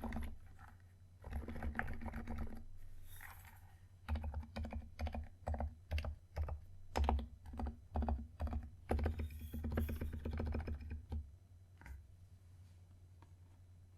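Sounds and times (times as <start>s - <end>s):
mechanical keyboard typing: 0.0s - 0.4s, 1.2s - 2.7s, 4.1s - 11.2s.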